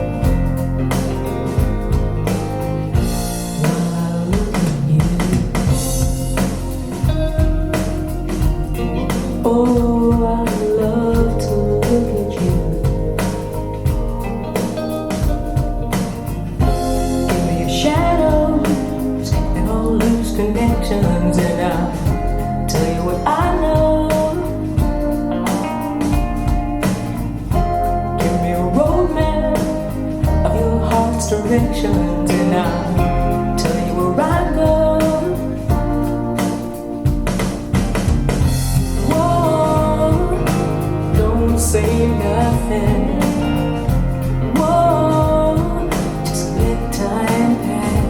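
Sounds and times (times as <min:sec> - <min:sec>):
guitar: 0:00.0 - 0:48.0
person singing: 0:03.3 - 0:14.0, 0:16.6 - 0:37.1, 0:38.8 - 0:48.0.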